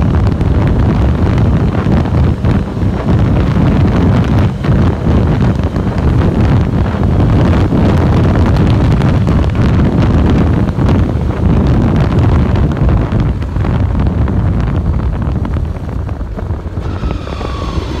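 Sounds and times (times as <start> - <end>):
wind buffeting microphone: 0.0 - 18.0
snowmobile engine: 15.4 - 18.0
clutch whine falling in pitch: 16.7 - 18.0.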